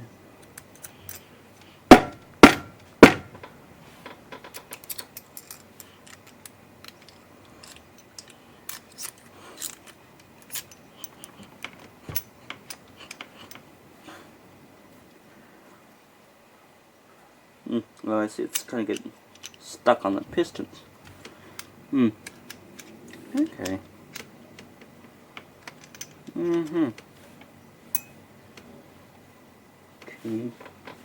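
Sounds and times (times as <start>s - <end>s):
metal parts clinking: 0.4s - 1.7s, 4.4s - 13.6s, 18.5s - 19.7s, 21.6s - 24.3s, 25.6s - 27.0s
sharp knocks on metal: 1.9s - 3.5s.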